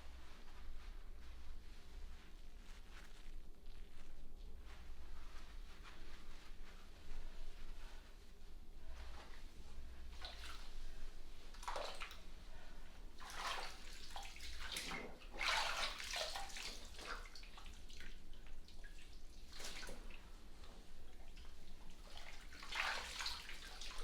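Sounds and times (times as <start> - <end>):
bath water sloshing and splashing: 10.1 - 24.0.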